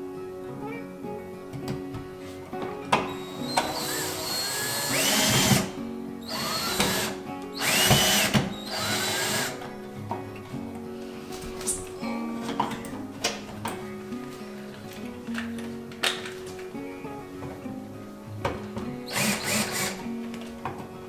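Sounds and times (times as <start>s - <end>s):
acoustic guitar music: 0.0s - 19.1s, 19.9s - 21.0s
power drill motor whine: 3.1s - 9.6s, 19.1s - 20.0s.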